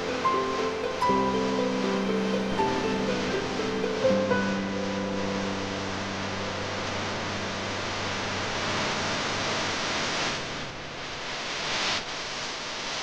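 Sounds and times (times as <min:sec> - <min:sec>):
hiss like rushing air: 0:00.0 - 0:08.0
background music: 0:00.0 - 0:08.4.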